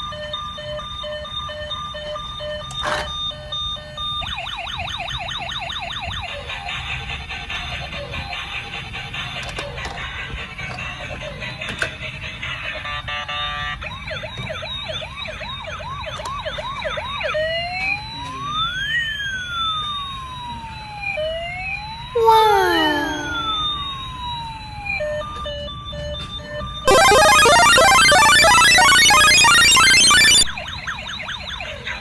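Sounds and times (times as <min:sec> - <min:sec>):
falling sound effect: 0:22.2 - 0:23.7, 0:26.9 - 0:30.6
toy electronic siren: 0:22.2 - 0:23.8, 0:26.9 - 0:31.9
electronic jingle: 0:26.9 - 0:30.6.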